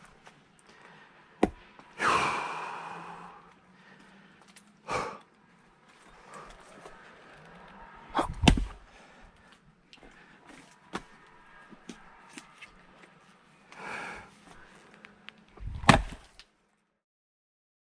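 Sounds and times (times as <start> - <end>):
axe splitting firewood: 1.4 - 1.9, 8.1 - 8.9, 15.6 - 16.4.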